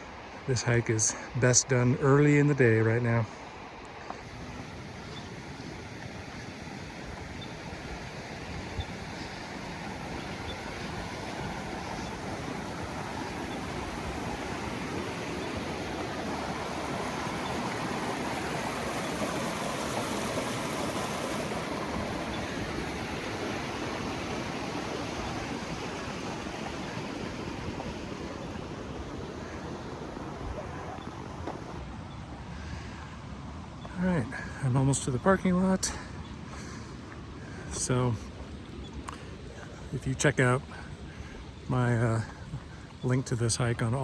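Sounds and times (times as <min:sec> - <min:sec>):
creek water rushing: 0:03.3 - 0:31.8.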